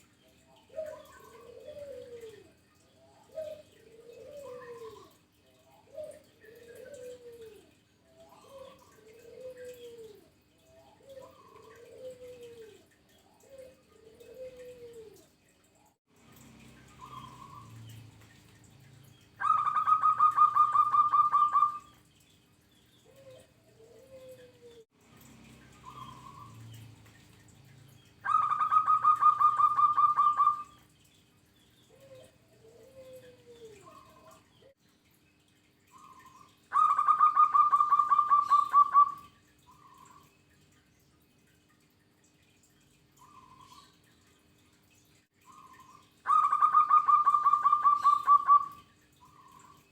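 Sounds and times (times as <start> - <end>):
dove cooing: 0.5 - 15.4, 16.8 - 18.2, 19.1 - 22.0, 23.0 - 24.8, 28.2 - 30.8, 31.9 - 34.5, 35.9 - 40.3, 45.5 - 49.8
dove calling staccato notes: 19.4 - 21.9, 28.2 - 30.8, 36.0 - 39.3, 45.5 - 48.8.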